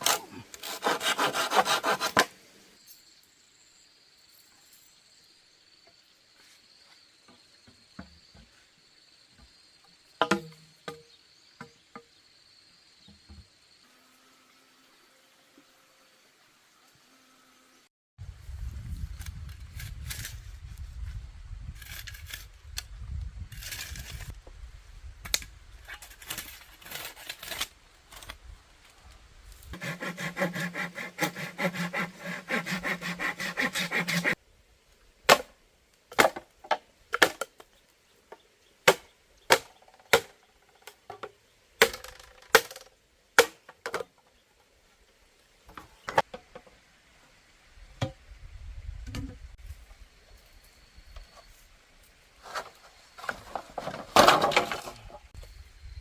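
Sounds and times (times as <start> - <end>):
sawing bamboo: 0.0 - 2.4, 25.9 - 28.3, 29.7 - 34.4
sharp wooden knocks: 10.2 - 11.7.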